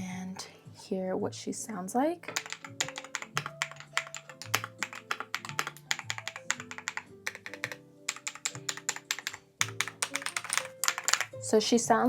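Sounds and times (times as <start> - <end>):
quiet background music: 0.0 - 12.0
mechanical keyboard typing: 2.3 - 11.4.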